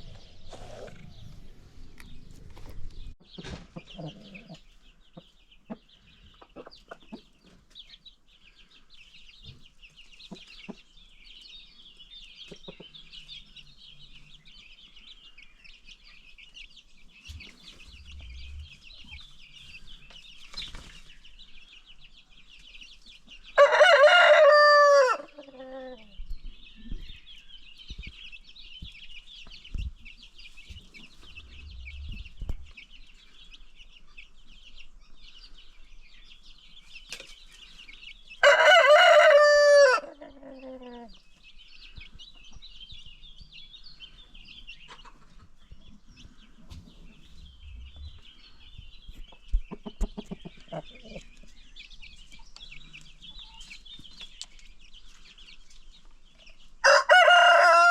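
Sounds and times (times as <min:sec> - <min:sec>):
rooster crowing: 0:23.6 - 0:25.3, 0:38.4 - 0:40.2, 0:56.8 - 0:57.9.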